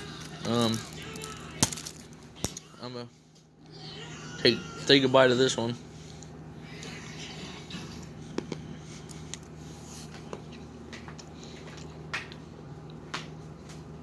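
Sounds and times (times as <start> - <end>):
person chewing chocolate: 0.0 - 2.1.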